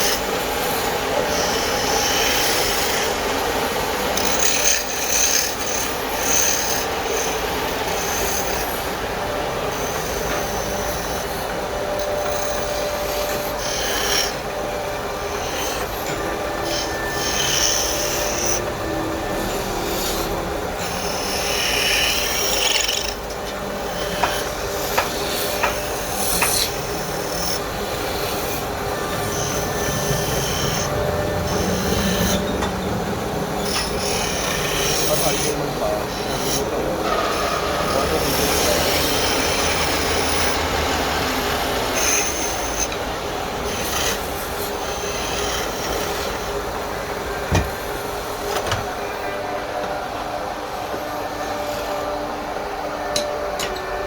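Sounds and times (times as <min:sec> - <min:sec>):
rasping and scraping on wood: 0:15.4 - 0:32.4.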